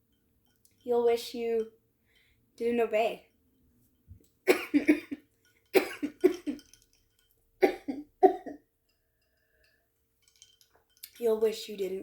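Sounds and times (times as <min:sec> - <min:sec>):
woman coughing: 0:04.5 - 0:05.2, 0:05.8 - 0:06.6, 0:07.6 - 0:08.6.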